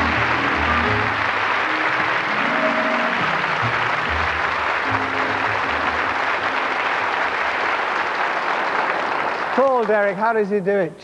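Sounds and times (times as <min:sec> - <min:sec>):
backing music: 0:00.0 - 0:08.0
audience applauding: 0:00.0 - 0:10.7.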